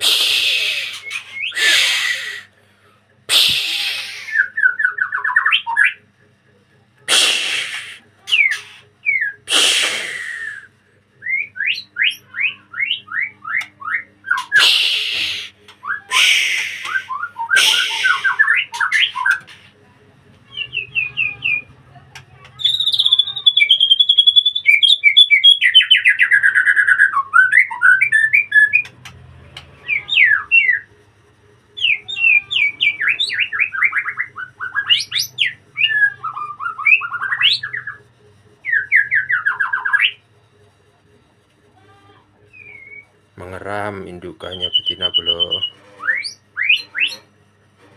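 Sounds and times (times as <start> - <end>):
harsh rasping bird notes: 0.0 - 2.5, 3.3 - 6.0, 7.1 - 19.8, 20.5 - 30.9
bird singing whistles: 10.0 - 19.4, 42.5 - 43.1, 44.5 - 47.2.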